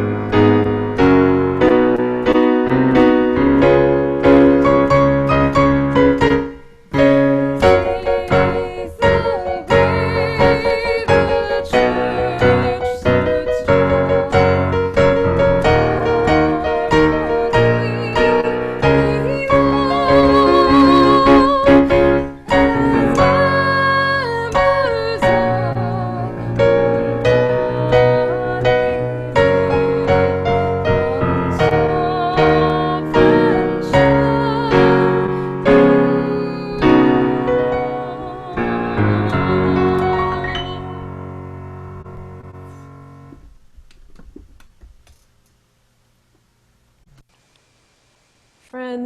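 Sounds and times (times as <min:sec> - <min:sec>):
piano music: 0:00.0 - 0:43.5
person singing with vibrato: 0:04.2 - 0:41.3.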